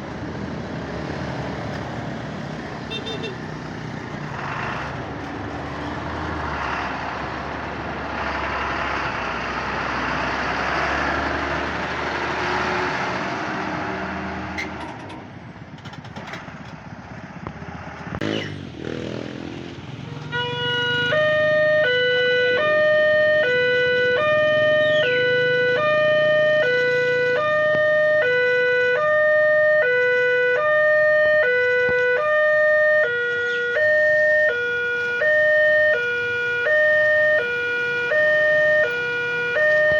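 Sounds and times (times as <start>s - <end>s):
passing traffic: 0.0s - 39.9s
electronic two-tone siren: 20.3s - 39.9s.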